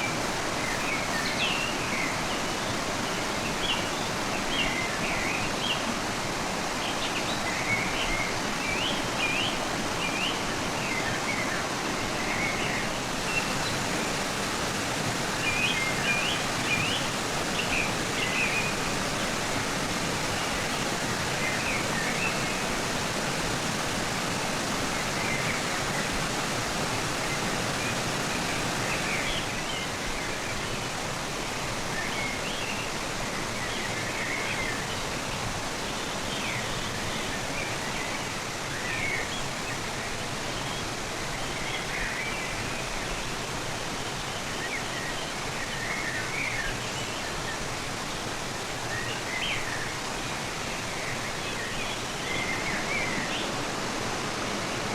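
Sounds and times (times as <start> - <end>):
small birds chirping: 0.0 - 2.5
river water rushing: 0.0 - 54.9.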